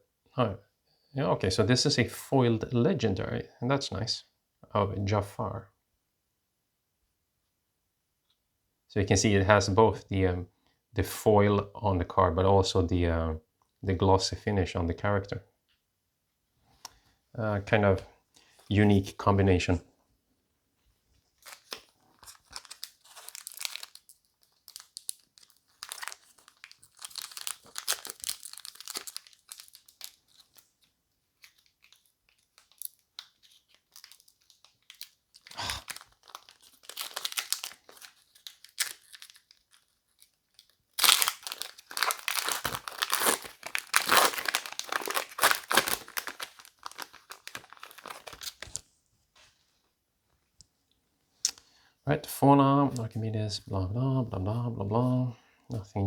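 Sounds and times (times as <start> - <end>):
foil wrapper crinkling and tearing: 21.4 - 48.9.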